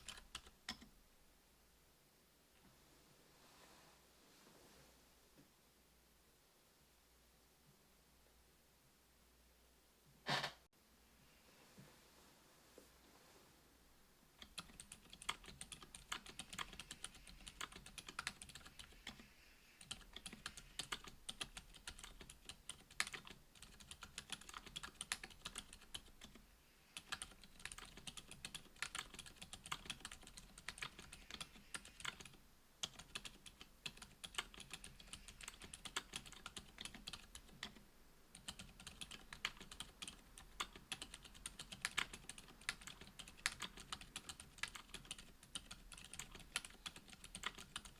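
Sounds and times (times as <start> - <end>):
quiet typing on mechanical keyboard: 0.0 - 0.9, 14.4 - 26.4, 27.0 - 47.9.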